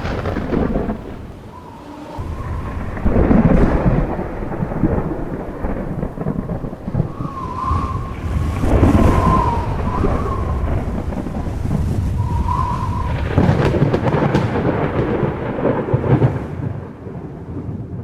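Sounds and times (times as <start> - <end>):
rain: 0.0 - 18.0
rolling thunder: 0.0 - 18.0
wavering whistle: 1.3 - 5.2, 5.8 - 13.8.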